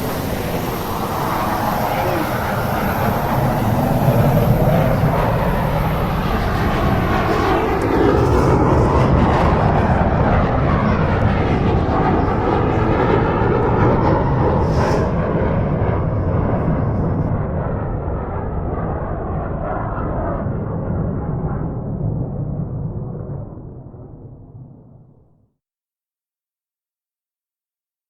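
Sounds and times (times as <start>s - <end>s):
loud engine noise: 0.0s - 17.3s.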